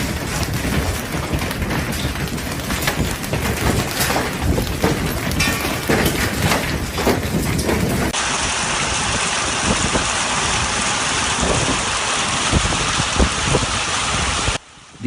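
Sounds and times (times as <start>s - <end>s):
hailstones pounding on a roof: 0.0s - 8.3s.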